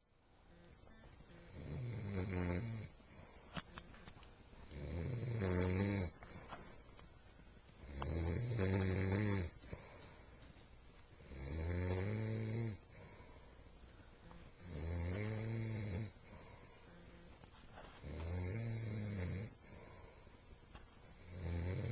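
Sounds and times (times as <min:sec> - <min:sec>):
quiet breathing: 0:00.2 - 0:21.9
man snoring: 0:01.3 - 0:03.2, 0:04.6 - 0:06.2, 0:07.8 - 0:09.9, 0:11.2 - 0:13.2, 0:14.6 - 0:16.6, 0:18.0 - 0:20.0, 0:21.2 - 0:21.9.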